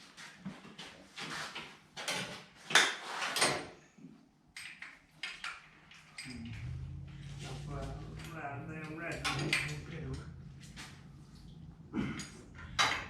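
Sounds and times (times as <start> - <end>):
metal parts clinking and clanking: 9.1 - 13.0.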